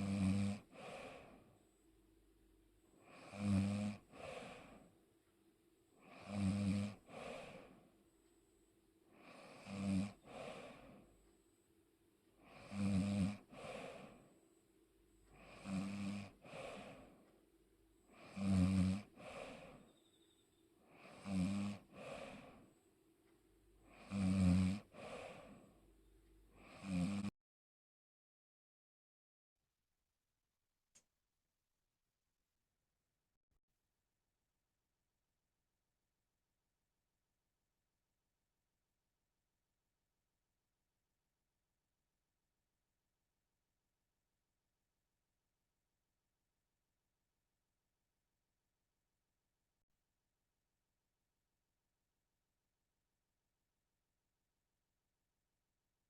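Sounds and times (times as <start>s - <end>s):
person snoring: 0.0s - 1.4s, 3.0s - 4.8s, 6.0s - 7.8s, 9.1s - 11.0s, 12.4s - 14.2s, 15.4s - 17.2s, 18.1s - 19.9s, 20.9s - 22.6s, 23.9s - 25.8s, 26.5s - 27.3s.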